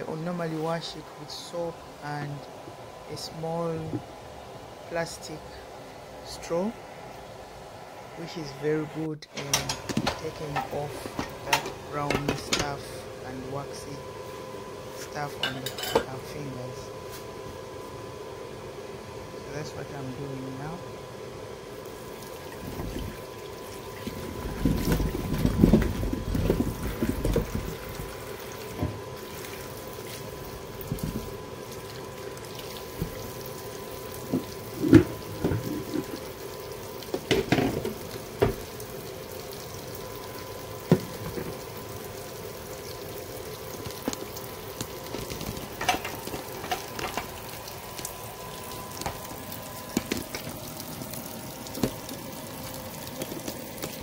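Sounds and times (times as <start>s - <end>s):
water running at a sink: 9.4s - 16.5s, 21.7s - 54.0s.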